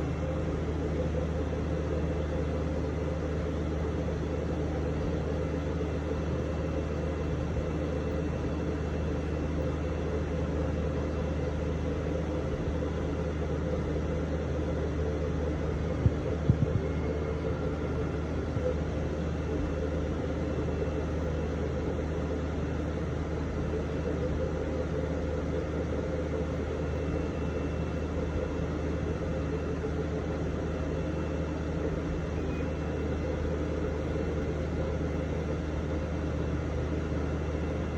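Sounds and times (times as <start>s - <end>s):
printer fans and motors humming: 0.0s - 37.9s.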